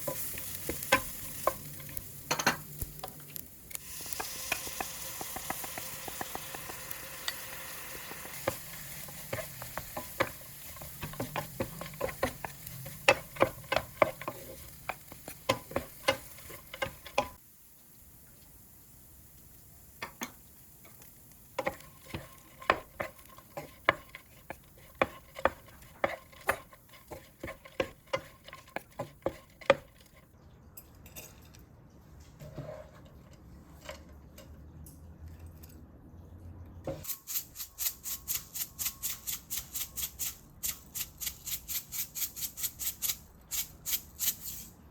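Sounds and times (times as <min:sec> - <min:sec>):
oil sizzling: 0:00.0 - 0:30.3
spatula scraping frying pan: 0:03.9 - 0:17.4, 0:20.2 - 0:30.2.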